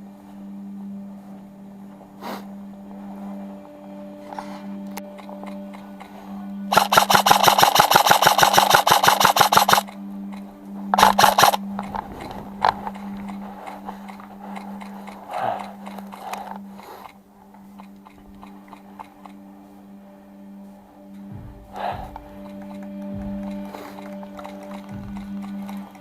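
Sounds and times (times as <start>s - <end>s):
steady low hum: 0.0s - 26.0s
airsoft gun firing full-auto: 6.7s - 9.9s, 11.0s - 11.6s
rustling: 10.9s - 19.4s.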